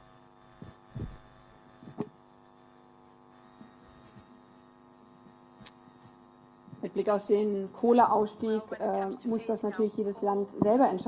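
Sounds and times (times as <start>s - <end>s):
electrical mains hum: 0.0s - 11.0s.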